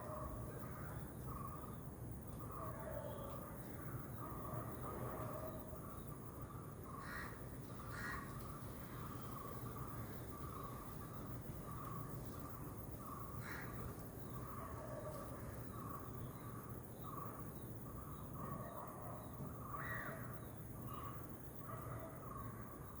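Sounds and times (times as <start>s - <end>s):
birds chirping: 0.0s - 23.0s.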